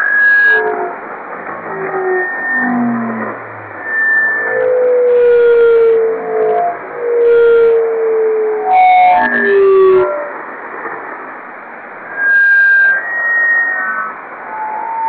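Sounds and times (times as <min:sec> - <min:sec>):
falling synthesized tones: 0:00.0 - 0:10.5
filtered electronic hiss: 0:00.0 - 0:15.0.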